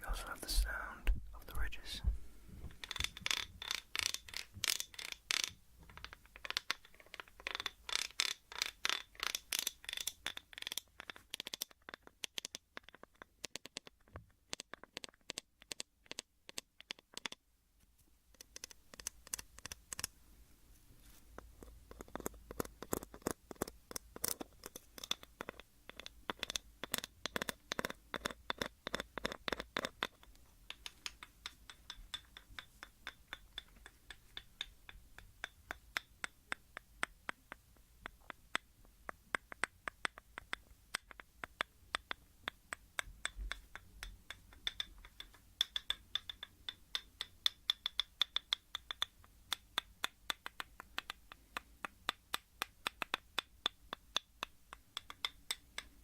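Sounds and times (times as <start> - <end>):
scratching on a small object: 21.0 - 34.7.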